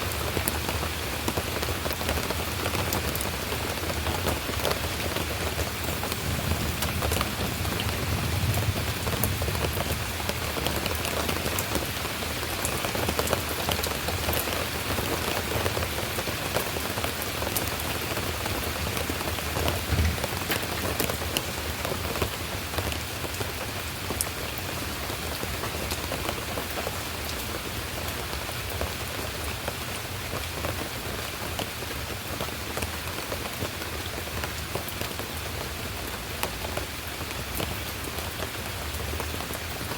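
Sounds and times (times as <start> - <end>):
steady rain falling: 0.0 - 39.9
brief low thud: 19.8 - 20.7.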